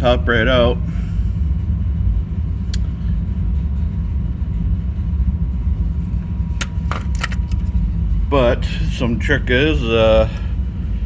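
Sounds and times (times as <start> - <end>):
low rumble: 10.4 - 11.0.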